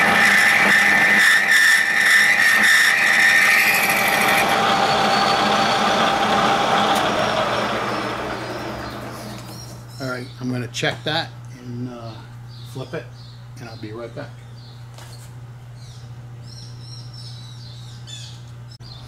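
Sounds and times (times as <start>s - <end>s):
milling machine cutting metal: 0.0s - 9.8s
high squeal: 0.0s - 10.1s.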